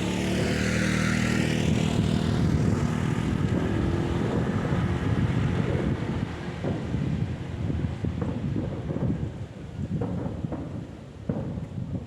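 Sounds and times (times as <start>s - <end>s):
engine passing by: 0.0s - 7.6s.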